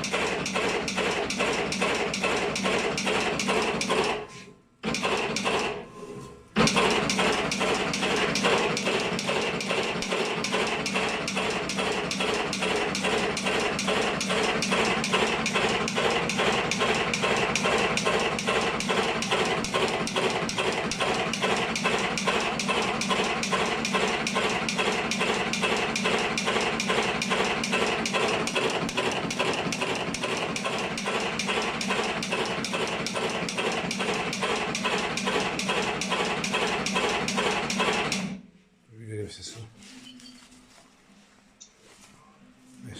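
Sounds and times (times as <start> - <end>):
mechanical clatter: 0.0 - 5.9, 6.6 - 38.4
machine motor hum: 4.8 - 38.3.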